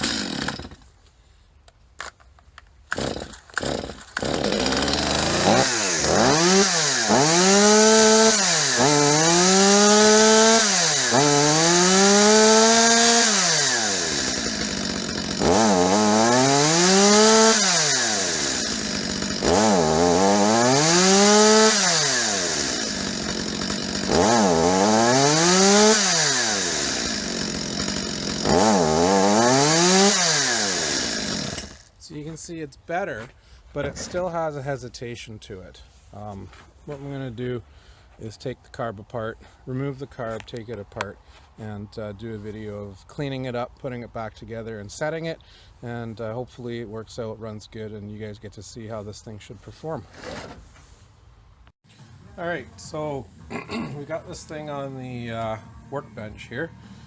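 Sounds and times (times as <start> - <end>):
chainsaw engine revving: 0.0 - 0.8, 2.9 - 32.0
chainsaw pull-start: 0.0 - 0.9, 2.9 - 32.0.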